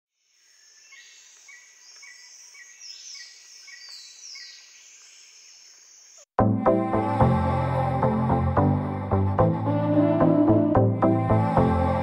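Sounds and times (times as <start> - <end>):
insects buzzing: 0.2 - 6.3
short insect chirp: 0.2 - 6.3.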